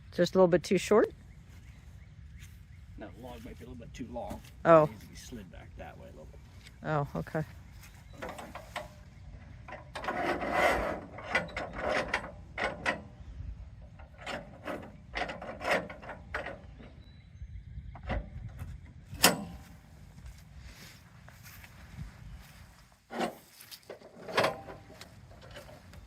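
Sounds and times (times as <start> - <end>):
log scraping on metal bed: 7.8 - 17.0, 22.4 - 26.0.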